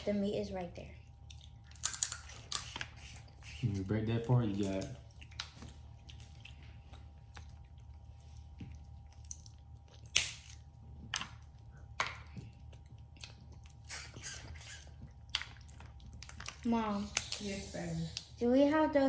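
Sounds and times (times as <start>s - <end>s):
wet chewing: 0.8s - 18.4s
crab shells cracking: 1.2s - 3.1s, 4.2s - 7.8s, 9.0s - 17.4s.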